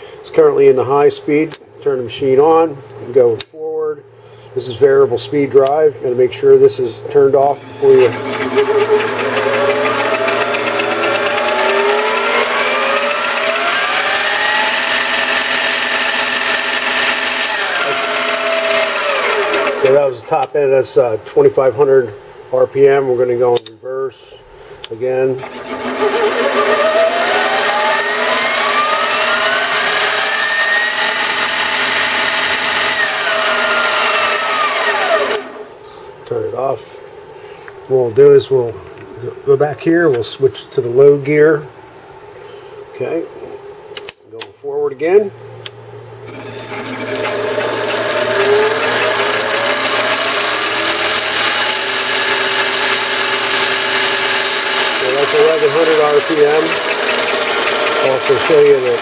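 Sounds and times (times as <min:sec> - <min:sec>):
lathe motor whine rising: 0:07.0 - 0:20.1, 0:25.3 - 0:35.8, 0:46.2 - 0:59.0.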